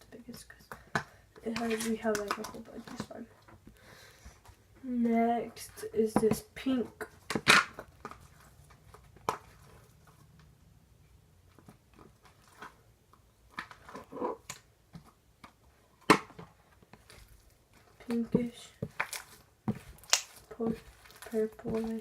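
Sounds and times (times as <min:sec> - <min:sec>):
slime crackling and popping: 0:18.8 - 0:22.0.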